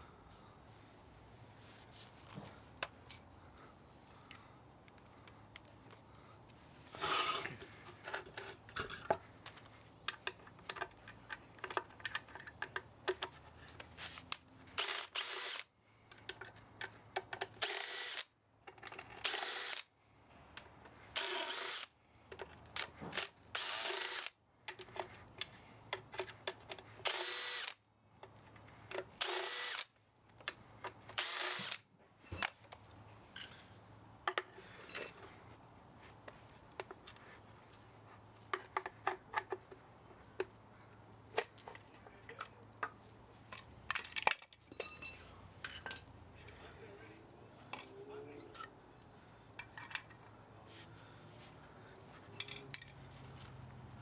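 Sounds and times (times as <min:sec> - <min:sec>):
power drill motor whine: 0:14.8 - 0:15.6, 0:17.6 - 0:18.2, 0:19.2 - 0:19.8, 0:21.2 - 0:21.9, 0:23.2 - 0:24.3, 0:27.0 - 0:27.8, 0:29.2 - 0:29.9, 0:31.2 - 0:31.8.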